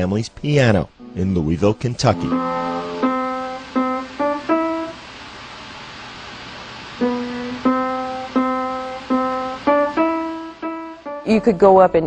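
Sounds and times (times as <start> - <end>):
slow melody of ringing notes: 1.0 - 5.0, 7.0 - 11.6.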